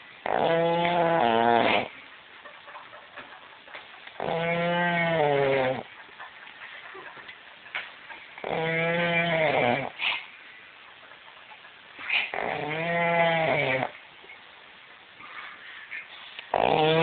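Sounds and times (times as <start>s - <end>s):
loud pitched snoring: 0.2s - 1.9s, 4.2s - 5.8s, 8.4s - 10.0s, 12.3s - 14.0s, 16.5s - 17.0s.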